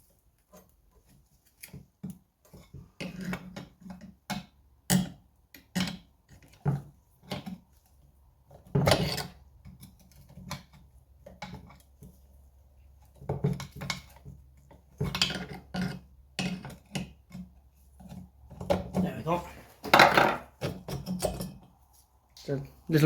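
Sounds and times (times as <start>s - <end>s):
hand tools clattering on metal: 19.8s - 21.6s.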